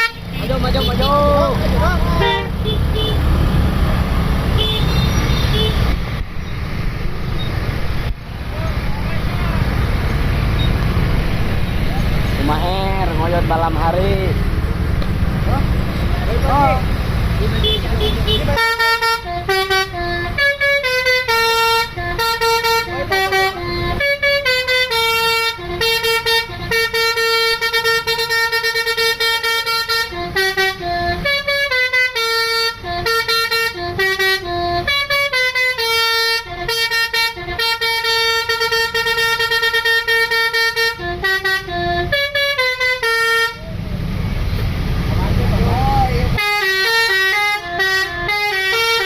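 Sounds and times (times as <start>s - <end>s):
multi-tone bus horn playing a tune: 0.0s - 3.4s, 4.5s - 6.0s, 17.4s - 43.9s, 46.3s - 49.0s.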